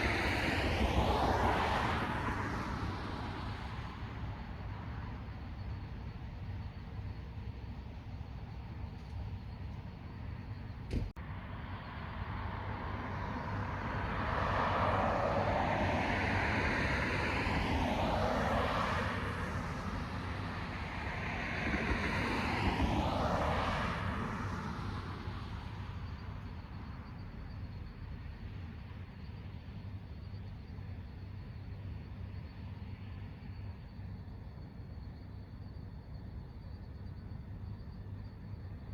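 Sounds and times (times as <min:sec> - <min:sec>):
cars passing: 0:00.0 - 0:05.2, 0:11.2 - 0:26.6.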